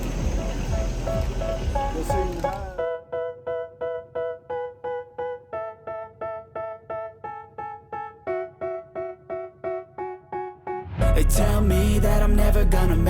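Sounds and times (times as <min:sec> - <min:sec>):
fuller noisy music mix: 0:00.0 - 0:03.0, 0:10.0 - 0:13.0
keyboard playing repeated chords: 0:00.0 - 0:13.0.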